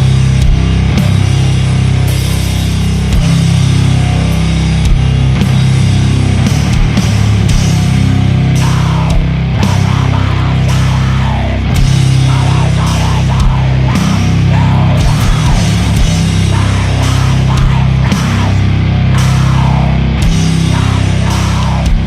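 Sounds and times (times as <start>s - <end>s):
distorted electric guitars: 0.0s - 22.0s
slow heavy drum hits: 0.0s - 22.0s.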